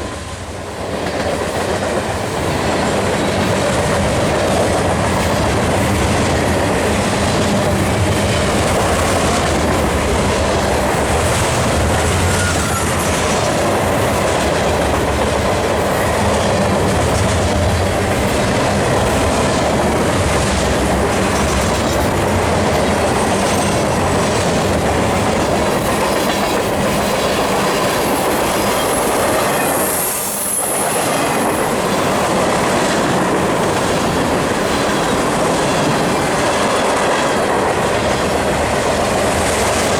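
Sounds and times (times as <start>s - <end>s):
freight train wheels clattering: 0.0s - 39.9s
high wheel squeal: 11.6s - 13.8s, 23.0s - 24.2s, 27.8s - 31.8s.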